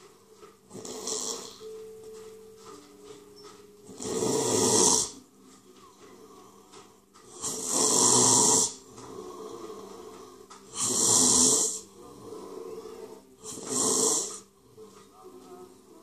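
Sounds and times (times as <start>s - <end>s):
person breathing heavily: 8.5s - 14.4s.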